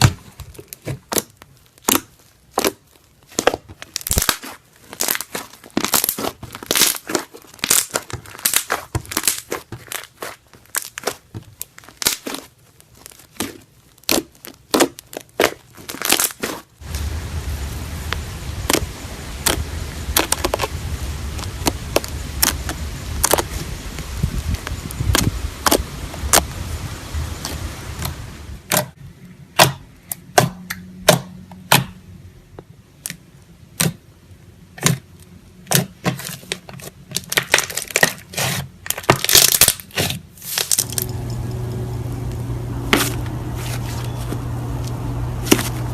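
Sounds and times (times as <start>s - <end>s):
slime crackling and popping: 0.0s - 26.6s, 35.7s - 45.9s
low hum: 16.8s - 24.9s, 40.8s - 45.9s.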